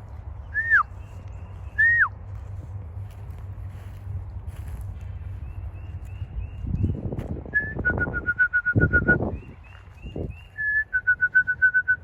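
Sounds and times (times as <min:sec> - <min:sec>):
person whistling a bird call: 0:00.5 - 0:00.9, 0:01.8 - 0:02.1, 0:07.5 - 0:09.4, 0:10.6 - 0:12.0.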